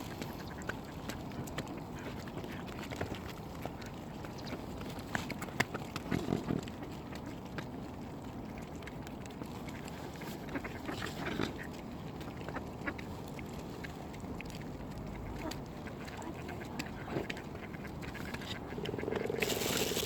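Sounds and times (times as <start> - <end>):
ducks and swans calling: 15.2 - 20.0
steady outdoor hiss: 16.0 - 20.0.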